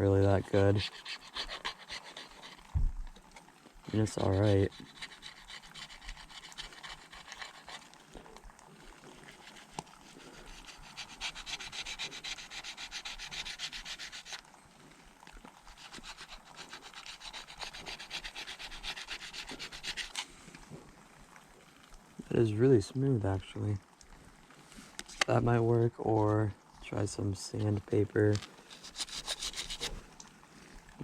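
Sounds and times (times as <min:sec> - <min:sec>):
plastic card scraping paint: 0:00.0 - 0:02.8, 0:03.9 - 0:08.0, 0:09.3 - 0:14.4, 0:15.7 - 0:20.2, 0:28.3 - 0:30.0.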